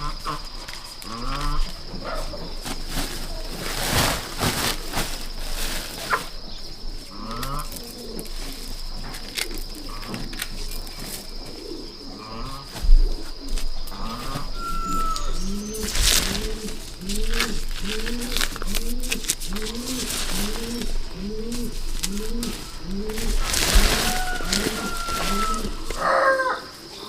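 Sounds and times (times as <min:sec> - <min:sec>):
doves cooing: 0:00.0 - 0:27.0.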